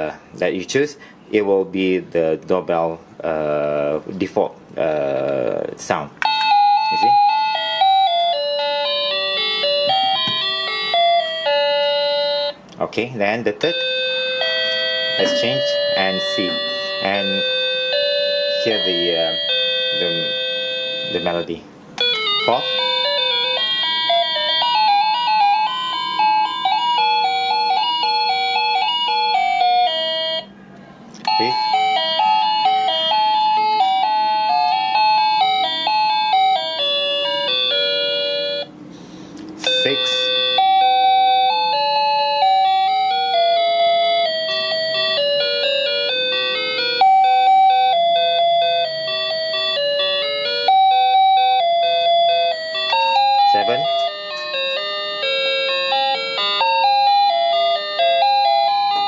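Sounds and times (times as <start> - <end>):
doorbell electronic chime melody: 6.2 - 12.6, 13.6 - 30.5, 31.3 - 38.7, 39.6 - 59.0.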